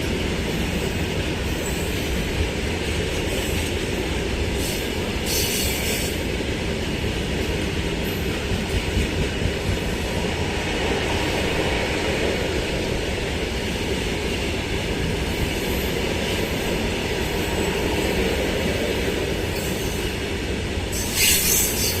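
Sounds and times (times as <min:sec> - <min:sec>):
train wheels rumbling on rails: 0:00.0 - 0:22.0
hissing screech: 0:20.9 - 0:22.0.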